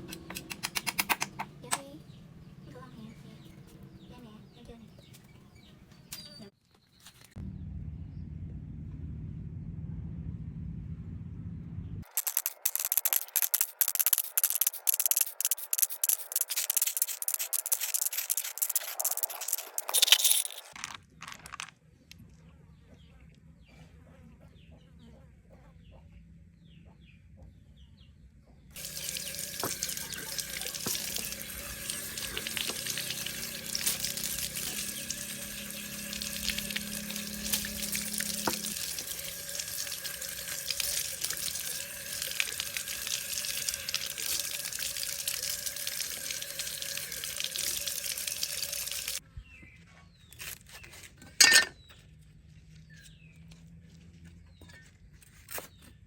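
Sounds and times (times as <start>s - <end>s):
water running from a tap: 12.2s - 20.1s, 28.8s - 49.2s.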